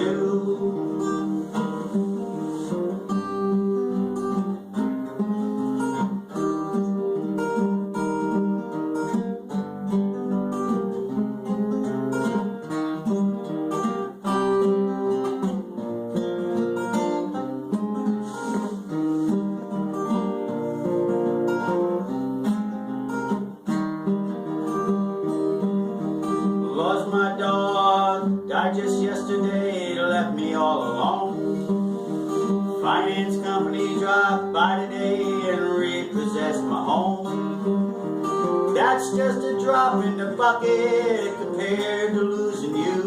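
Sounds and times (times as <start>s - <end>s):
acoustic guitar playing: 0.0s - 43.0s.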